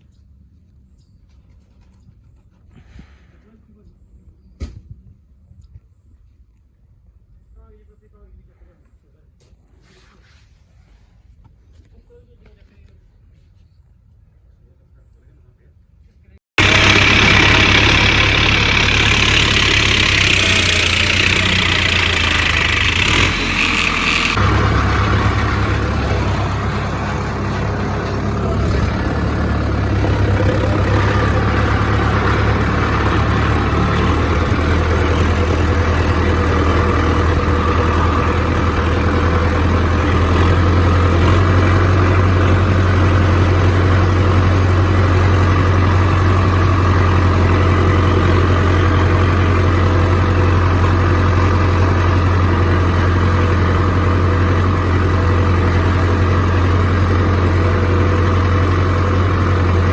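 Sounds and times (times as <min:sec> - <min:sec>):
tractor engine under load: 0:16.6 - 0:59.9.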